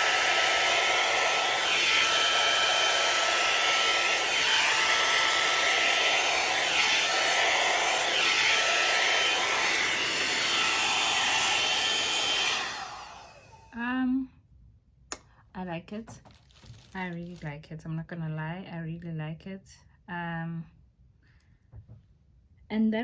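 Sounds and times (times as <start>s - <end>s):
hair dryer blowing whir: 0.0s - 13.8s.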